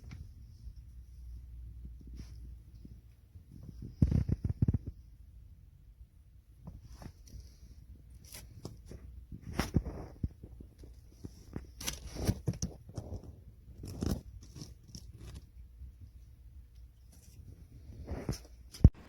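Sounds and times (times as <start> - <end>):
dry kibble crunching and rattling: 7.0 - 18.8.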